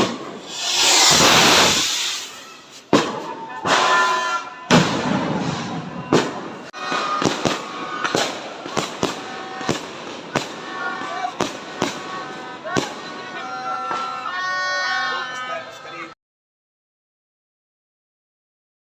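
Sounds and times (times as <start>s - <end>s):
firework rushing hiss: 0.0s - 4.0s
firework bangs and crackles: 0.0s - 14.5s.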